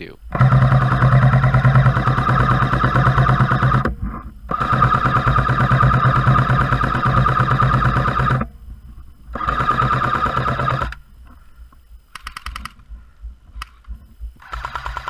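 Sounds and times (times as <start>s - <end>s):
airsoft machine gun firing bursts: 0.3s - 3.9s, 4.5s - 8.5s, 9.3s - 11.0s, 12.2s - 12.8s, 14.4s - 15.0s.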